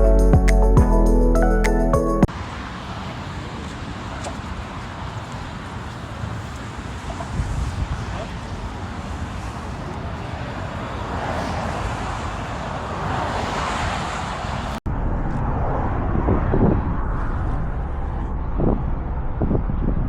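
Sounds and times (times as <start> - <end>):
outdoor rumble: 2.3 - 20.0
wind noise on microphone: 7.1 - 8.7, 13.3 - 20.0
wind buffeting microphone thumps: 14.9 - 20.0.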